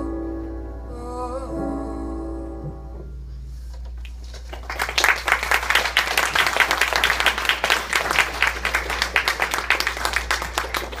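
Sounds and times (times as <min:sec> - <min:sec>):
hands clapping: 0:04.0 - 0:11.0.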